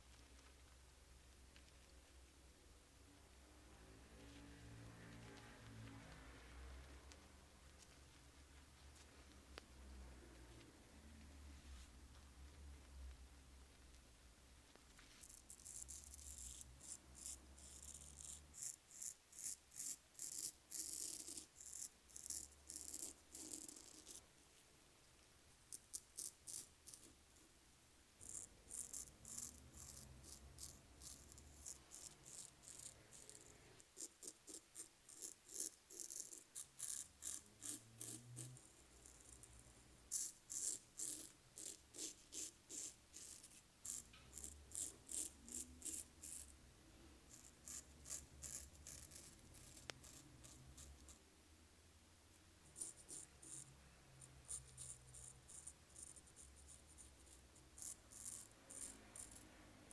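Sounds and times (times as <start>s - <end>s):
razor scraping beard stubble: 15.2s - 24.2s, 25.7s - 27.2s, 28.2s - 46.5s, 47.3s - 51.2s, 52.8s - 59.5s.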